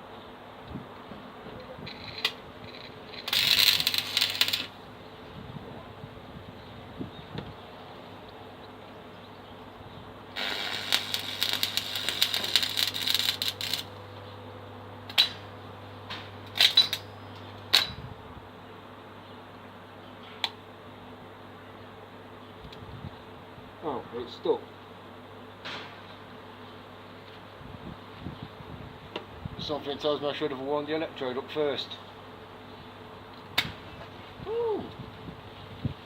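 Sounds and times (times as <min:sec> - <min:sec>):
welding arc crackling: 0:01.9 - 0:04.8, 0:10.4 - 0:14.0, 0:16.5 - 0:17.0.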